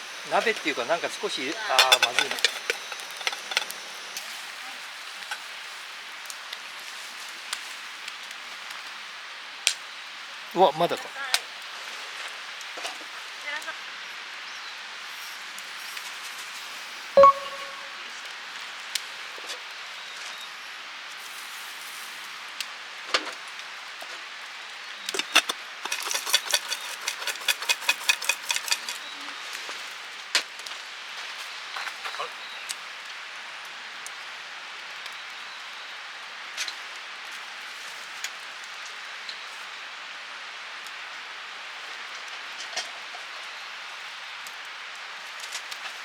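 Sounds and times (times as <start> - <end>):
steady hiss: 0.0 - 8.5
popcorn sizzling in hot oil: 0.0 - 17.8, 18.4 - 46.0
popcorn popping in a pot: 0.2 - 4.4, 25.1 - 29.2
light ticks of kernels: 0.2 - 13.8, 21.1 - 46.0.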